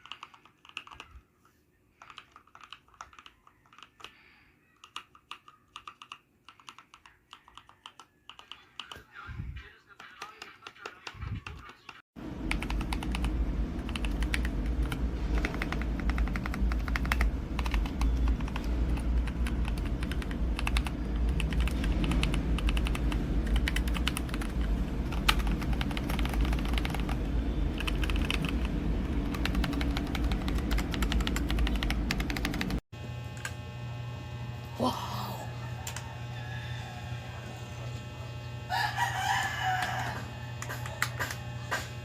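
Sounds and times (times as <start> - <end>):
steady low rumble: 12.2 - 32.8.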